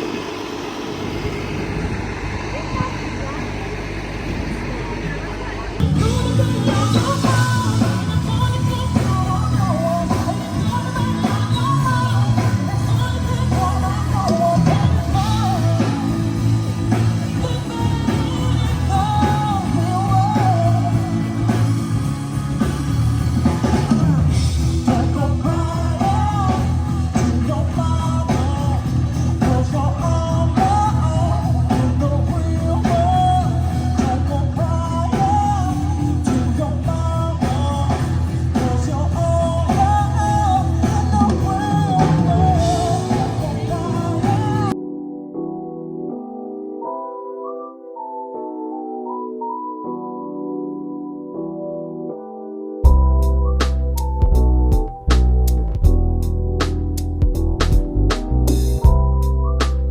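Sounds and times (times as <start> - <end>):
rock song with vocals: 5.8 - 44.8.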